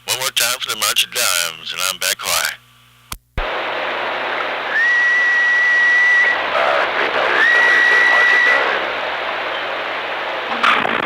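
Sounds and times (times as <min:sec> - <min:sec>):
radio static hiss: 0:00.0 - 0:11.0
high whistle tone: 0:04.7 - 0:06.5, 0:07.3 - 0:08.8
faint garbled voices: 0:06.3 - 0:09.5.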